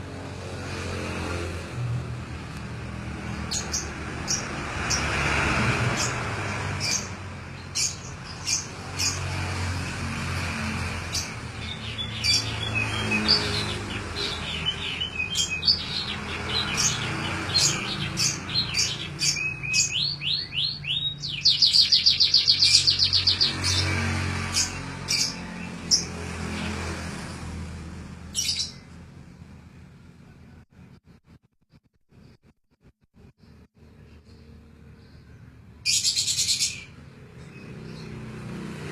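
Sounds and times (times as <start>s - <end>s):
canary singing: 2.9s - 9.7s, 10.7s - 26.8s, 28.2s - 29.0s, 33.4s - 38.4s.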